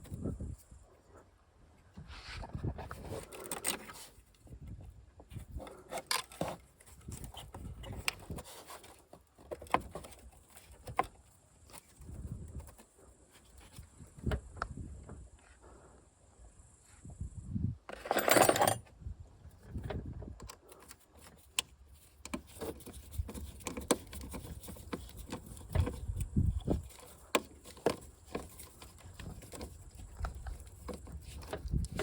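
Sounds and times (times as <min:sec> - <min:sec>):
metal tools clinking and knocking: 0:17.9 - 0:18.9.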